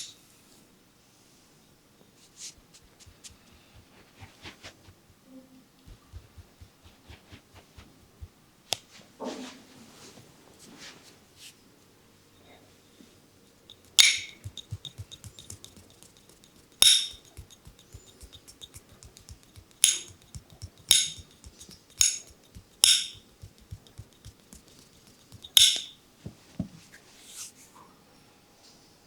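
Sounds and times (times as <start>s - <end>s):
light hand tapping: 2.4s - 5.2s, 5.8s - 8.4s, 13.7s - 26.8s.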